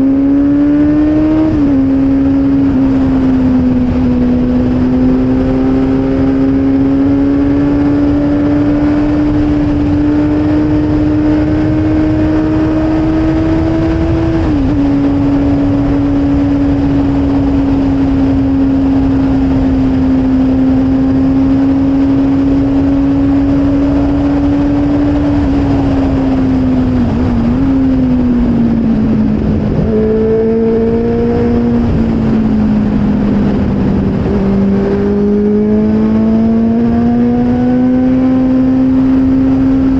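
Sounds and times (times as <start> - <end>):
motorcycle engine running: 0.0 - 39.9
low rush: 8.8 - 39.9.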